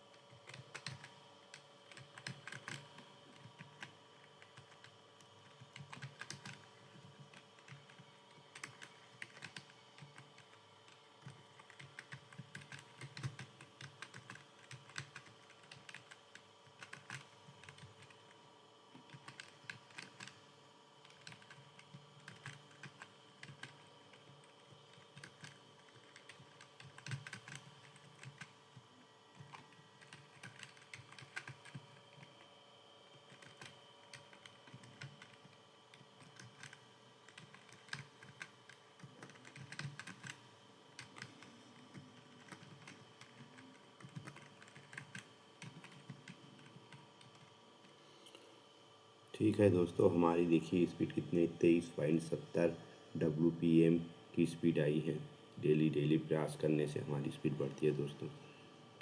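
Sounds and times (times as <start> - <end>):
faint steady hum: 0.0 - 59.0
keyboard typing: 0.3 - 18.3, 18.9 - 32.4, 33.2 - 48.0.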